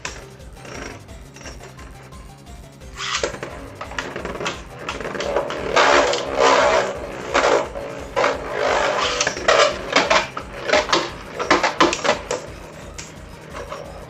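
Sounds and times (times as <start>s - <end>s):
spinning tops clashing in plastic stadium: 2.9s - 14.0s.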